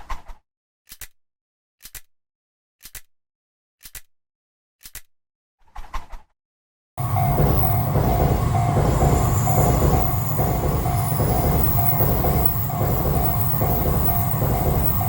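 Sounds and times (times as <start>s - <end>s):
crossing warning bell clanging: 7.0s - 15.0s
electric train running past: 7.0s - 15.0s.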